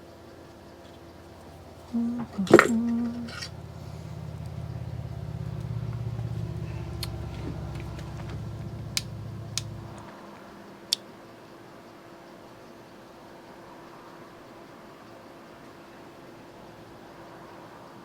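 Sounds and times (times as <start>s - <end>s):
low rumbling hum: 0.8s - 10.0s
small sharp clicks: 7.0s - 10.0s.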